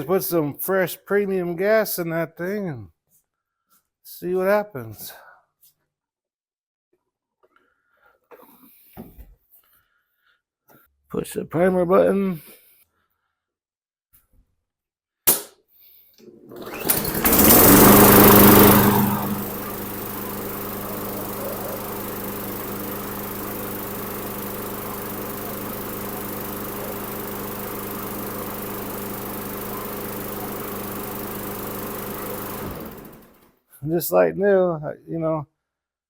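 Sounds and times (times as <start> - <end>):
sharp click: 15.3 - 15.6
lawn mower engine running: 16.5 - 33.4.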